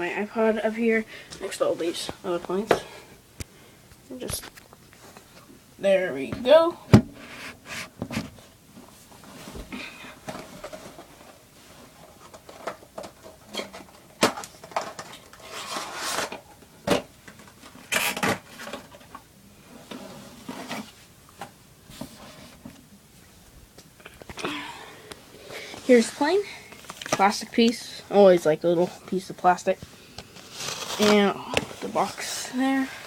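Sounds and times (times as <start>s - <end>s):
cardboard and plastic rustling: 6.9s - 19.2s, 25.5s - 33.0s.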